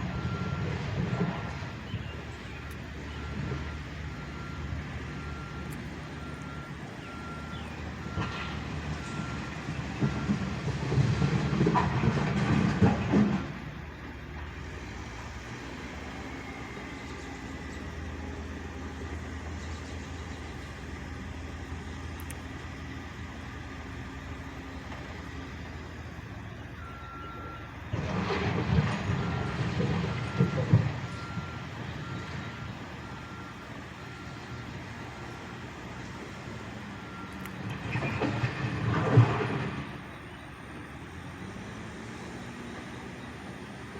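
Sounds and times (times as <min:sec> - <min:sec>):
reversing alarm beeps: 0:00.0 - 0:10.6, 0:26.6 - 0:35.7, 0:36.5 - 0:38.6
backhoe diesel engine: 0:00.0 - 0:43.9.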